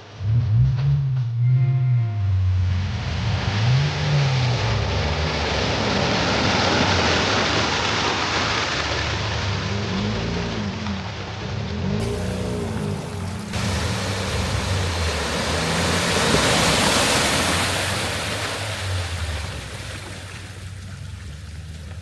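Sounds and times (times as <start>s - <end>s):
off-road vehicle engine: 0.0s - 22.0s
steady rushing noise: 12.0s - 20.6s.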